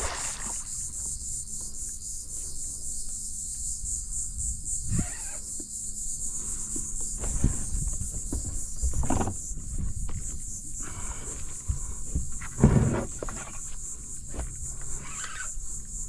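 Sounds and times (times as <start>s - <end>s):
high-pitched insect buzzing: 0.0s - 9.7s, 14.6s - 16.0s
low rumbles and knocks: 7.0s - 10.4s.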